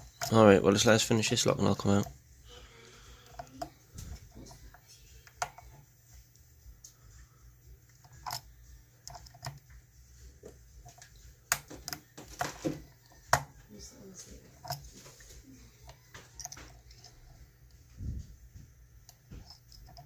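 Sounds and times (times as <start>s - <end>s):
lock pick clicking and scraping: 7.9s - 9.7s, 10.5s - 13.5s, 15.9s - 17.2s, 19.0s - 20.0s.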